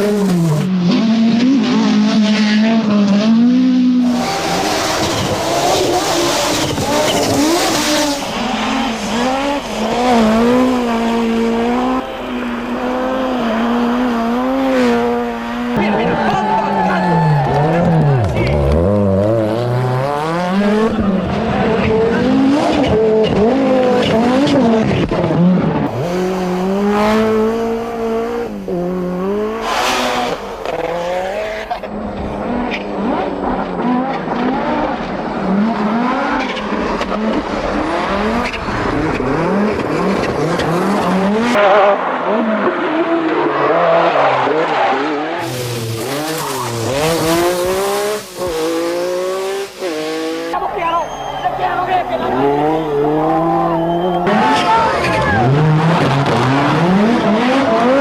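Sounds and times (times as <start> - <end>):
rally car engines revving: 0.0 - 58.0.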